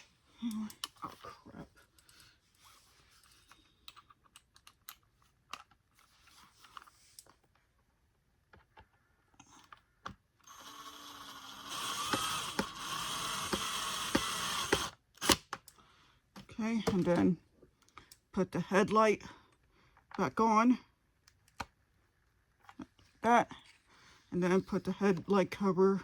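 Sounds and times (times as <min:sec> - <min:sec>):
clicks of small plastic parts: 0:03.2 - 0:07.5.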